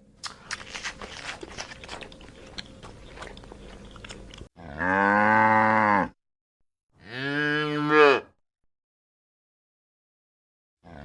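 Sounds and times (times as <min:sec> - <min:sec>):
cow mooing: 0:04.6 - 0:06.2, 0:07.0 - 0:08.3.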